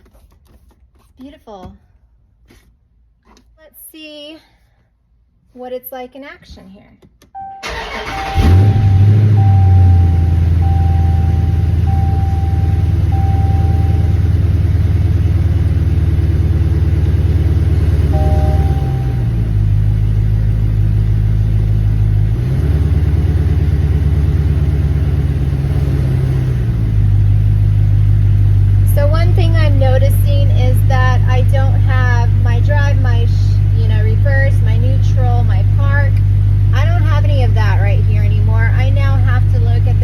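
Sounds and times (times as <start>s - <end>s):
car engine starting and idling: 7.3s - 40.0s
dashboard chime: 8.4s - 14.4s, 18.1s - 19.4s
two-note chime: 18.2s - 19.4s.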